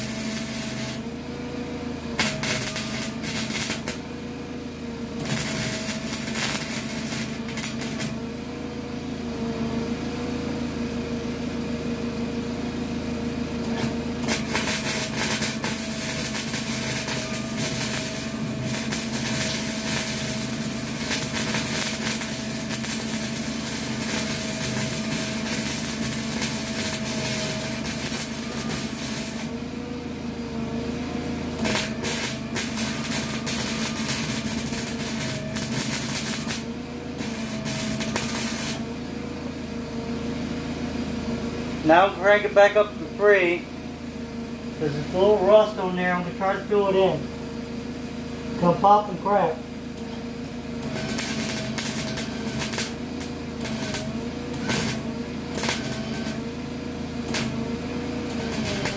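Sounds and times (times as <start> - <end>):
welder arc crackling: 0.0 - 1.2, 2.2 - 4.1, 5.2 - 8.2, 13.6 - 29.6, 31.6 - 39.0, 48.6 - 56.6, 57.2 - 58.9
steady hum: 0.0 - 1.4, 2.1 - 8.5, 13.7 - 30.8, 31.6 - 39.1, 41.3 - 53.0.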